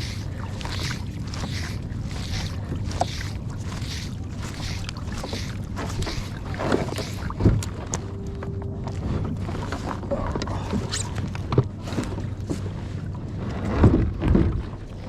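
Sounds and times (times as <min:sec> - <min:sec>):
boat engine running: 0:00.0 - 0:15.0
brief steady tone: 0:07.8 - 0:10.0.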